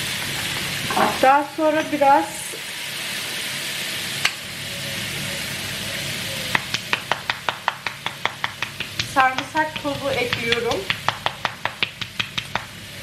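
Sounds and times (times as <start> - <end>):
meat and onions sizzling in a pan: 0.0 - 13.0.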